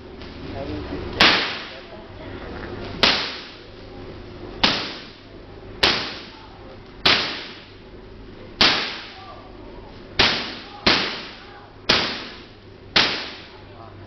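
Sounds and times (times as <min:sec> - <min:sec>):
steady low hum: 0:00.0 - 0:14.0
electric sparks cracking: 0:01.1 - 0:02.0, 0:02.8 - 0:03.9, 0:04.6 - 0:06.4, 0:07.0 - 0:07.8, 0:08.6 - 0:09.3, 0:10.1 - 0:13.6.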